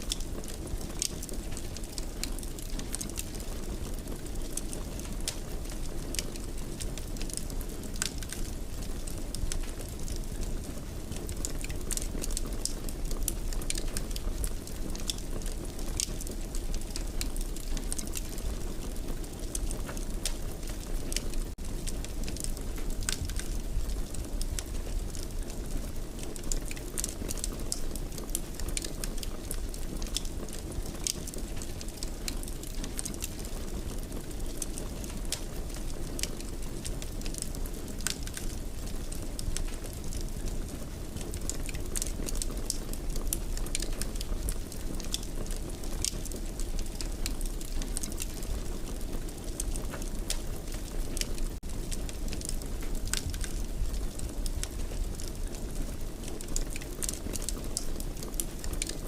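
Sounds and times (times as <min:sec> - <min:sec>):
fire crackling in fireplace: 0:00.0 - 0:59.0.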